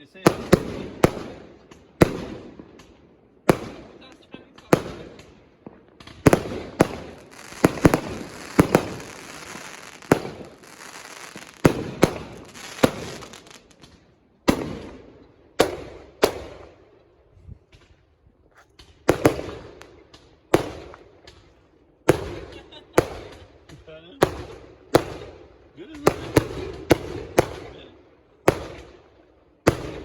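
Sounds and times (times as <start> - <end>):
fireworks bangs: 0.2 - 16.8, 18.8 - 25.3, 29.6 - 30.0
hissing crackle: 7.1 - 14.0.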